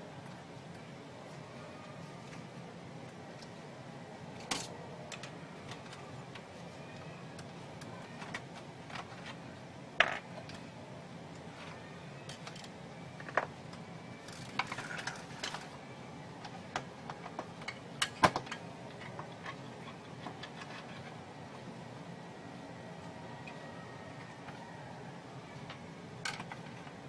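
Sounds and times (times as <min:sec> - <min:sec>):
clicks and knocks of printer parts: 0:16.7 - 0:19.6.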